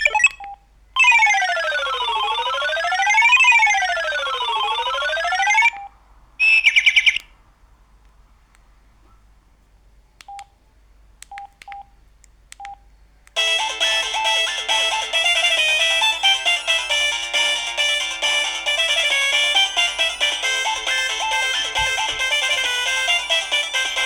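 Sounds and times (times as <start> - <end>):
short beeps: 0.0 - 0.5
polyphonic ringtone melody: 1.0 - 5.7, 13.4 - 24.0
phone siren-like tone: 1.0 - 5.8.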